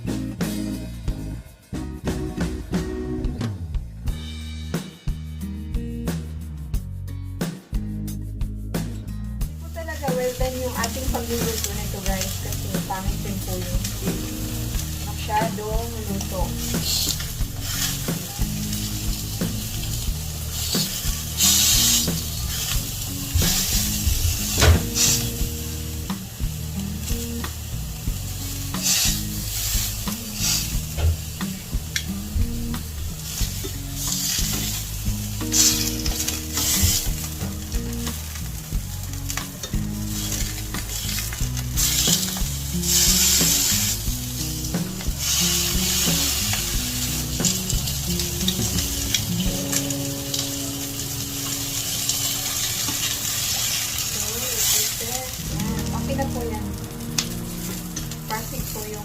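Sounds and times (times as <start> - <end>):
fish sizzling in a frying pan: 9.5 - 59.0.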